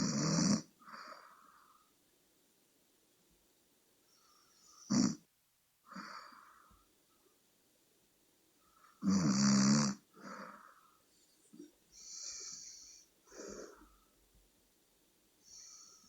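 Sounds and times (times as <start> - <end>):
person snoring: 0.0 - 0.7, 4.8 - 5.2, 9.0 - 10.7
breathy exhale: 12.0 - 14.2.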